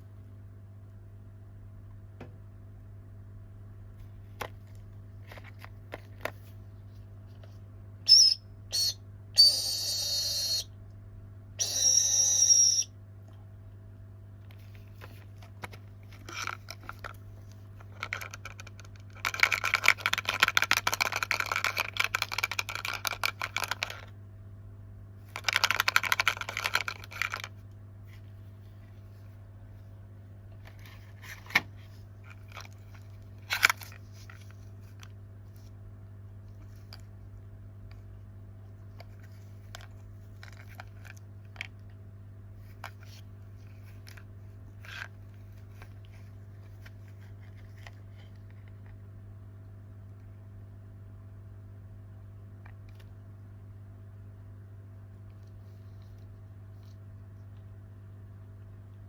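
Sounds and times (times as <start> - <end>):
high-pitched whistling squeaks: 8.1 - 10.7, 11.6 - 12.9
plastic wrapper crinkling: 14.6 - 24.1, 25.2 - 27.6.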